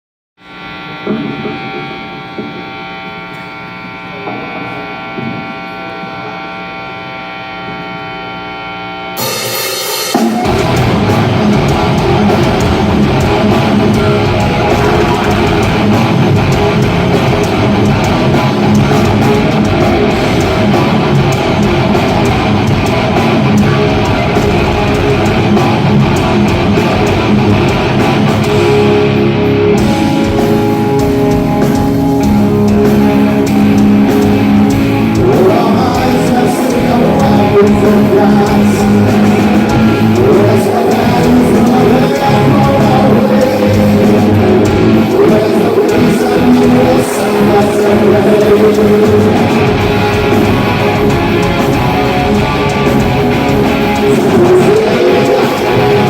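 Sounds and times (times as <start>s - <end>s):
distorted electric guitar chords: 0.4s - 56.0s
cymbal: 9.2s - 11.8s
drum kit playing heavy rock: 9.2s - 56.0s.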